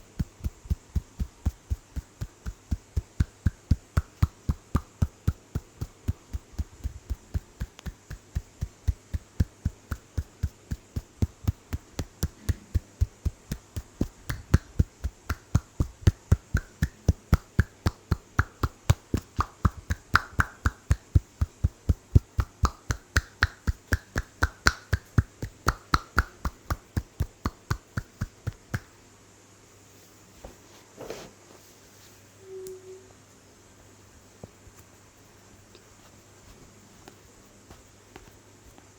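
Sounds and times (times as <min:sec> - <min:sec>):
rhythmic tapping of head massage: 0:00.0 - 0:29.0, 0:34.2 - 0:38.9.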